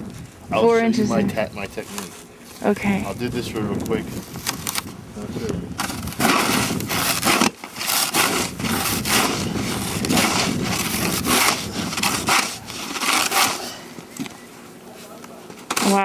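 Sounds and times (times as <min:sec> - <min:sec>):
snow shovel chopping and scraping: 0:05.8 - 0:13.9.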